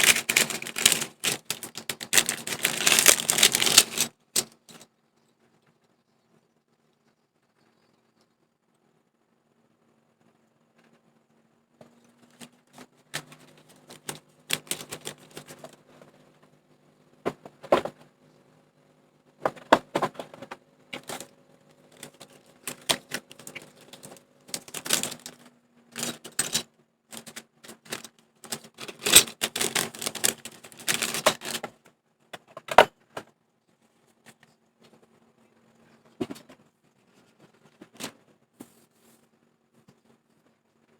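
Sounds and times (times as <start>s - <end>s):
mechanical keyboard typing: 0.0s - 4.1s, 27.2s - 31.6s.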